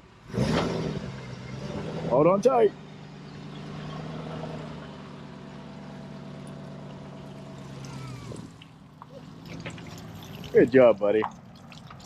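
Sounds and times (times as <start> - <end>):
vehicle engine running: 0.9 - 11.7
water running off boat: 6.9 - 12.0.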